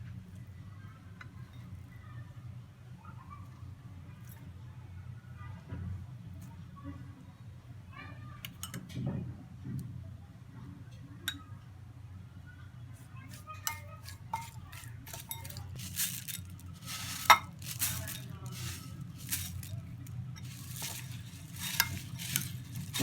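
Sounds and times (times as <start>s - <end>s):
puffed rice rustling: 13.3s - 23.0s
spoon clinking against bowl: 13.7s - 19.7s, 20.4s - 23.0s.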